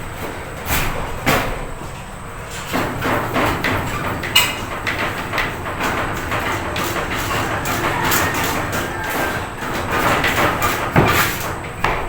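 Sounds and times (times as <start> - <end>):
wire scraping through conduit: 2.4 - 11.8.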